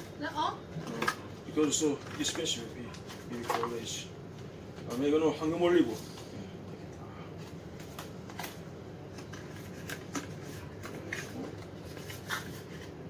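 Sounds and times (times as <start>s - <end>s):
food packaging rustling and clicking: 0.8s - 4.0s, 7.4s - 13.0s.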